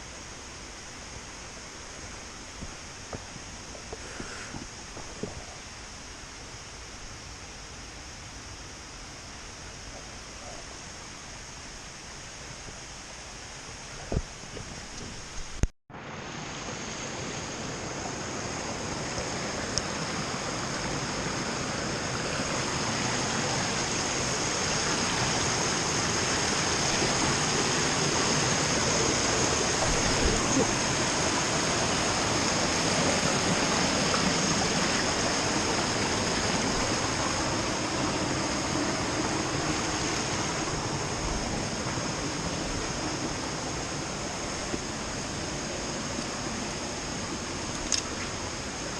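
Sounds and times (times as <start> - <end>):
creek water rushing: 10.9 - 48.9.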